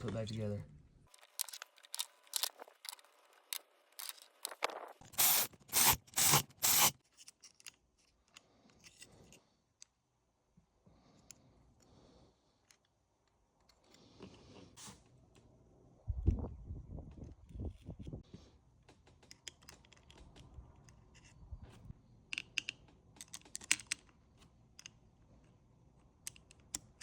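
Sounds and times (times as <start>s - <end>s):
small metal parts clicking: 1.1s - 4.6s.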